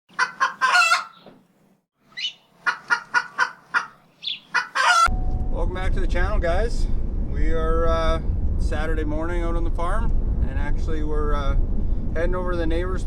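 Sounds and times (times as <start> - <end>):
fowl calling: 0.1 - 1.3, 2.1 - 5.1
steady low rumble: 5.1 - 13.0.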